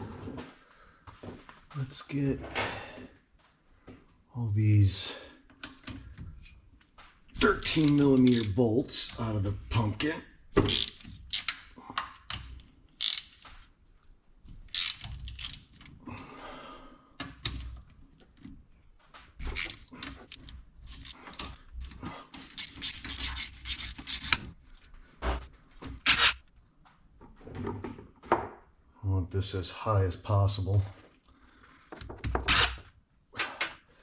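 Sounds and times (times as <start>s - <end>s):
ratchet wrench clicking: 10.7s - 11.6s, 13.0s - 13.4s, 14.7s - 15.6s, 22.6s - 24.4s.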